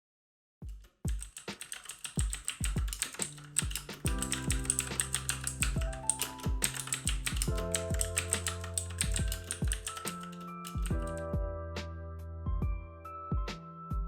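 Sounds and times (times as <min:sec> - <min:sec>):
lo-fi music: 0:02.2 - 0:14.0.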